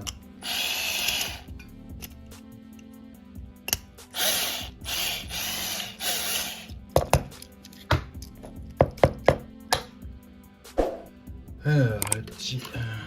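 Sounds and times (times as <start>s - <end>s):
small electric drill boring: 0.4s - 1.5s, 4.2s - 6.8s
clicks of small parts handled: 12.0s - 12.8s.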